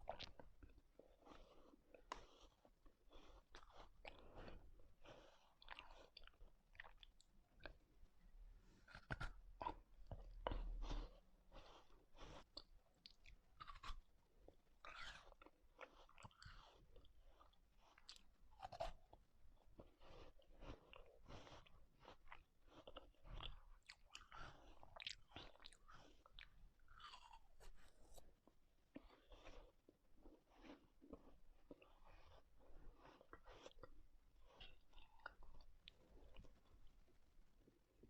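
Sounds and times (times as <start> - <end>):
wet chewing mouth sounds: 0.0 - 7.9, 8.8 - 36.9.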